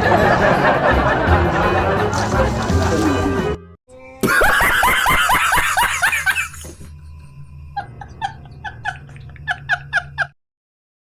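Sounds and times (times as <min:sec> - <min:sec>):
loud laughter: 0:00.0 - 0:03.0, 0:04.2 - 0:06.9, 0:07.7 - 0:10.4.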